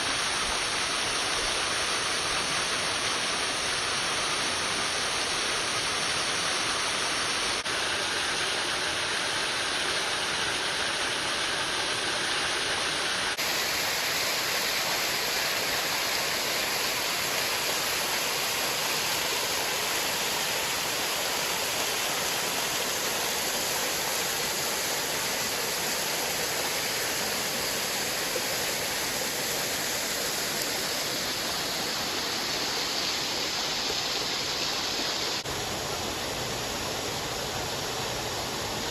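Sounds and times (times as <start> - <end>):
creek water rushing over falls: 0.0 - 38.9.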